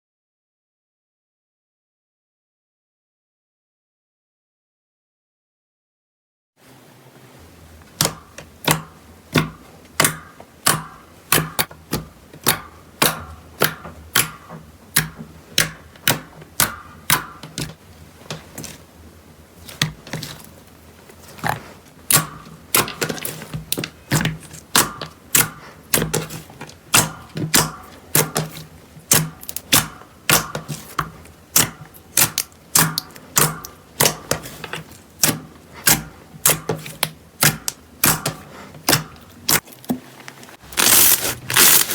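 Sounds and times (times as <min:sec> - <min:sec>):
slime squishing with popping clicks: 0:31.5 - 0:34.6.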